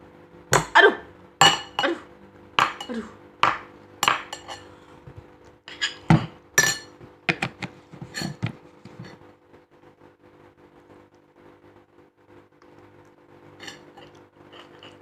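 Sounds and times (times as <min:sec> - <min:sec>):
metal spoon clinking against dish: 0:04.0 - 0:04.7, 0:05.7 - 0:07.0, 0:13.6 - 0:15.0.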